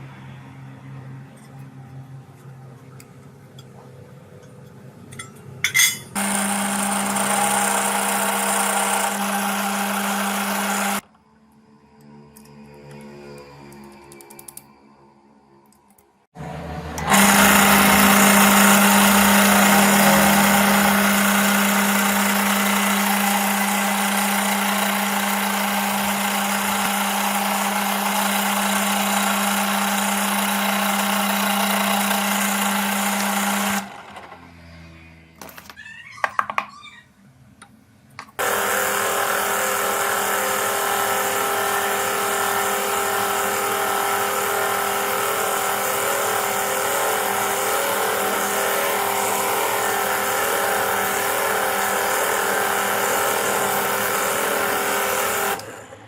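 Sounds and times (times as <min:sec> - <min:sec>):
electric power tool humming: 0:06.2 - 0:11.0, 0:16.4 - 0:34.9, 0:38.4 - 0:56.0.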